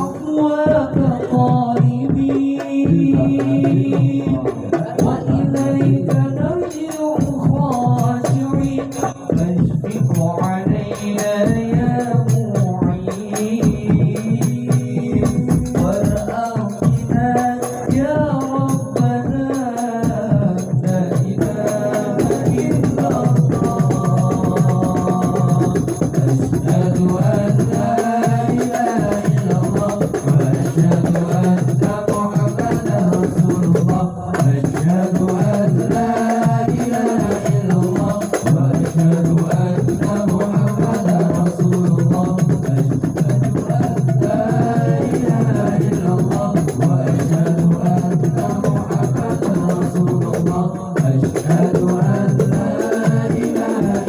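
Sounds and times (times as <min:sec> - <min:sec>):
hand percussion with jingles: 0:20.9 - 0:54.0.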